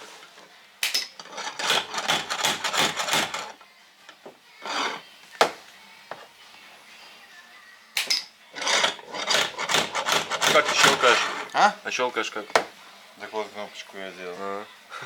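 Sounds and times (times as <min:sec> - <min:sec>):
scraping on metal: 0:01.2 - 0:03.6, 0:04.2 - 0:05.1, 0:08.5 - 0:11.6.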